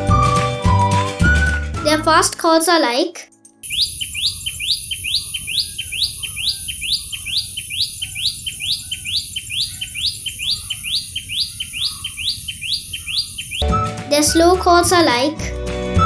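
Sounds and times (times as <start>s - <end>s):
bird giving sharp rising calls: 3.7s - 13.7s.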